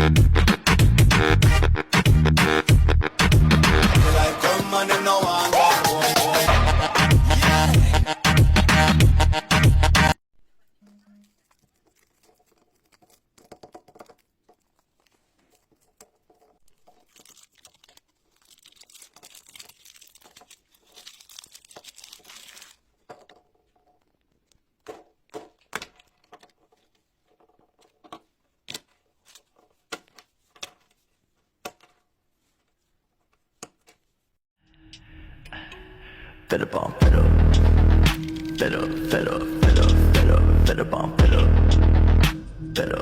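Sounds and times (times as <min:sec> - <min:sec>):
crinkly crackle: 0:10.6 - 0:24.8.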